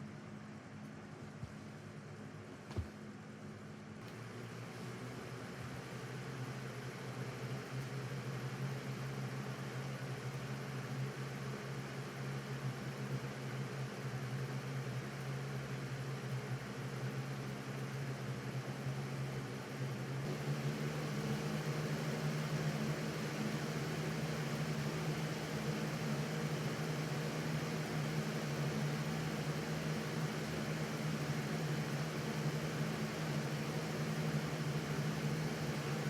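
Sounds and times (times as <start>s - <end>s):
electric fan humming and whooshing: 16.2s - 36.0s.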